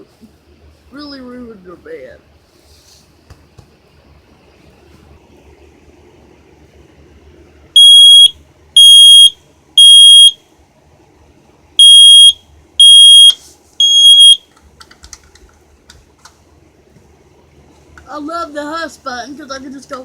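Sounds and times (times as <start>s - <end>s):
smoke alarm beeping: 7.8s - 10.4s, 11.8s - 14.4s.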